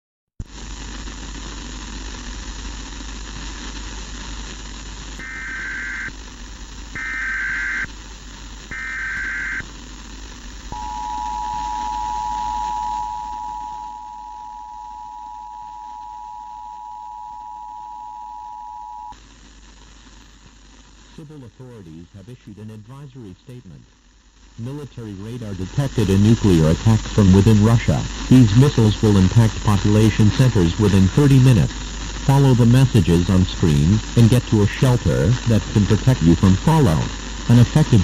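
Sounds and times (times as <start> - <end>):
channel hiss: 0.4 - 38.0
two-tone attention signal: 8.7 - 9.6, 10.8 - 19.1.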